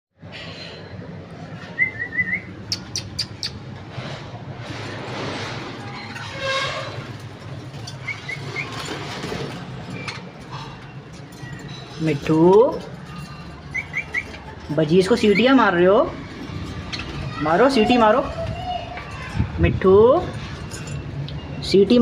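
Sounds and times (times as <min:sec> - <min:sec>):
birds chirping and whistling: 0:01.7 - 0:03.7, 0:07.9 - 0:09.0, 0:13.1 - 0:15.8.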